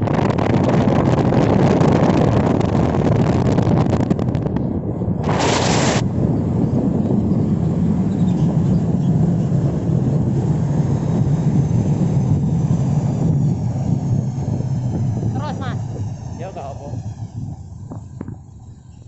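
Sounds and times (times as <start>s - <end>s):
bus diesel engine rumbling: 6.1s - 19.0s.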